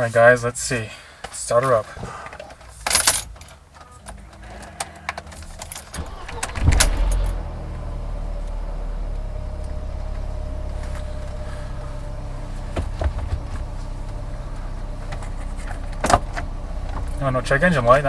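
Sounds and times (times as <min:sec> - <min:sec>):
car engine cranking and idling: 0:02.1 - 0:18.0
keys jangling in ignition: 0:02.8 - 0:04.3, 0:05.2 - 0:07.4.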